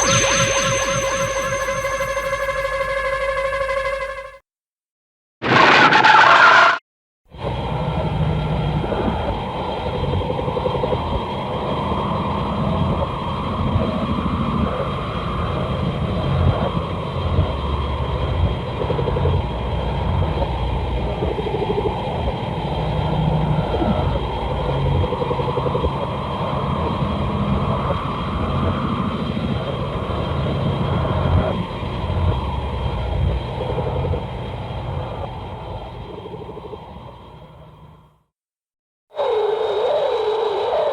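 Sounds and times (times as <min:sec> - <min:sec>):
thin steady high tones: 0:00.0 - 0:04.4.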